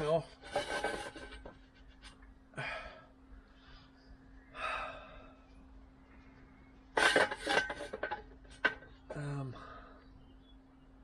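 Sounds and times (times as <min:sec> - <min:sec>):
faint steady hum: 0:00.0 - 0:11.0
knocks and clattering: 0:00.4 - 0:01.7, 0:07.0 - 0:09.1.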